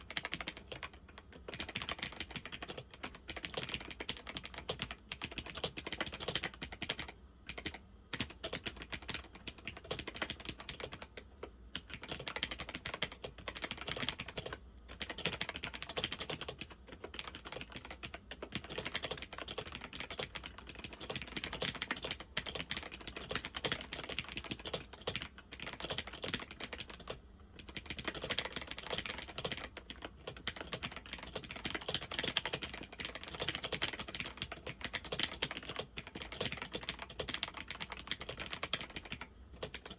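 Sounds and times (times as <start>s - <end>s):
clicky laptop keyboard typing: 0.0s - 39.9s.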